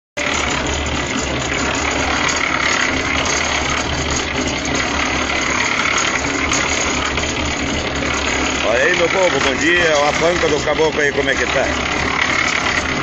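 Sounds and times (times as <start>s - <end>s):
low hum: 0.2s - 13.0s
motor-driven machine running: 0.2s - 13.0s.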